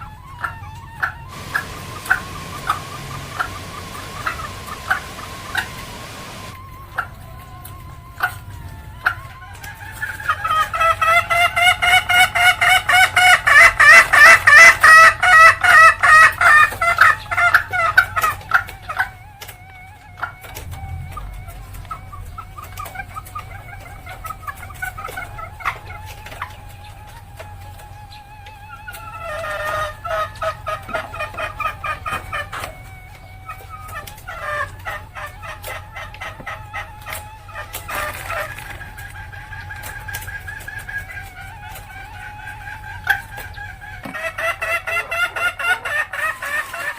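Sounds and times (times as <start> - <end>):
hen cackling: 0.1 - 7.1, 9.8 - 46.9
steady high background tone: 1.3 - 6.6.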